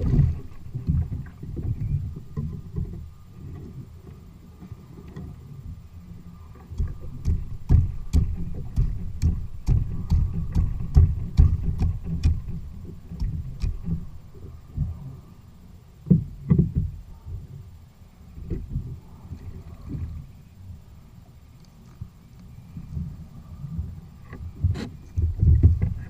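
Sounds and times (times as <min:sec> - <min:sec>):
fish thrashing on plastic deck: 0:06.8 - 0:14.2.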